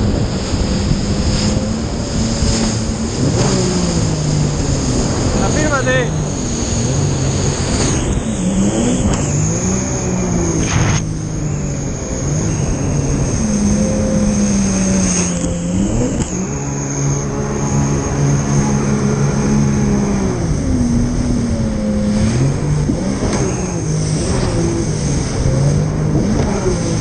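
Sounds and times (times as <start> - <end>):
jet ski engine running: 0.0 - 27.0
steady rushing noise: 0.0 - 27.0.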